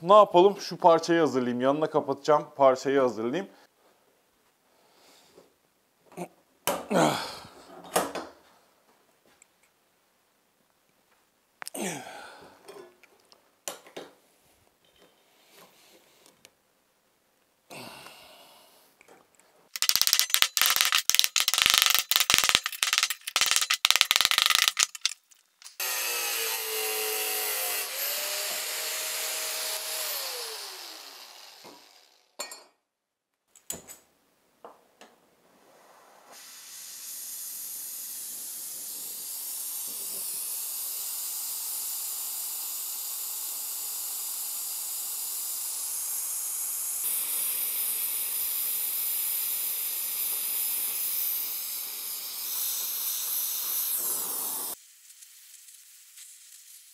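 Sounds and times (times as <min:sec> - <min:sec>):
rapid clicking: 0:19.8 - 0:25.8
small power tool running: 0:19.8 - 0:32.4, 0:36.4 - 0:54.8
gas torch hissing: 0:36.3 - 0:54.8.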